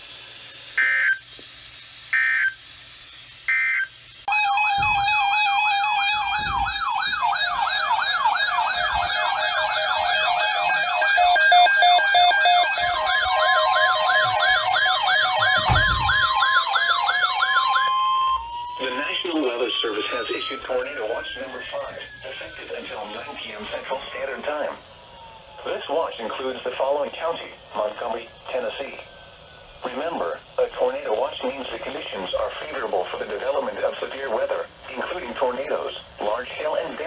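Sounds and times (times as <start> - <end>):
emergency alert data tones: 0.8 - 1.2, 2.1 - 2.6, 3.5 - 33.5
warbling electronic siren alert: 0.8 - 1.2, 2.1 - 2.6, 3.5 - 29.7
rising tone glide: 17.9 - 24.4
steady tone: 18.4 - 30.8.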